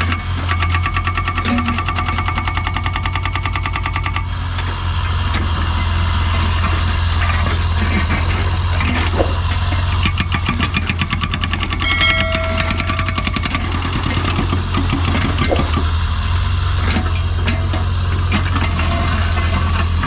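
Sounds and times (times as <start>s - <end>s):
rapid clattering: 13.2s - 16.0s.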